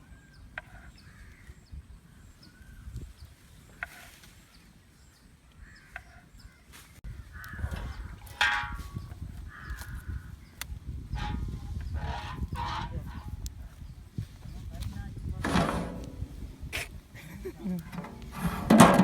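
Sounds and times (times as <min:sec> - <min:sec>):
crows cawing: 0:07.2 - 0:08.2, 0:09.5 - 0:10.2
low rumbling noise: 0:15.4 - 0:17.2.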